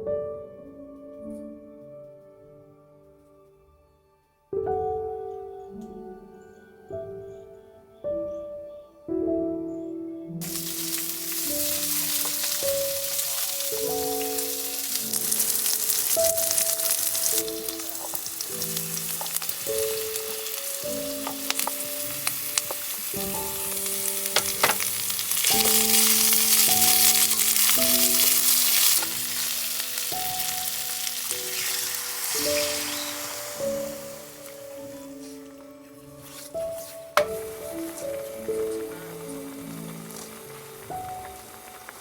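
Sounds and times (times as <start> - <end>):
background music with held notes: 0.0 - 42.0
food sizzling in a pan: 10.4 - 35.6, 36.2 - 42.0.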